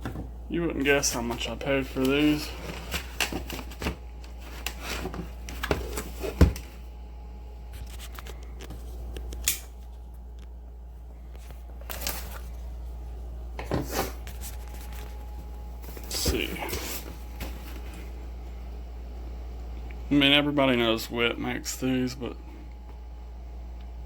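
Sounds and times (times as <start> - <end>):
steady low hum: 0.0 - 24.0
packaging rustling: 0.9 - 6.8, 11.3 - 12.8, 14.0 - 18.1.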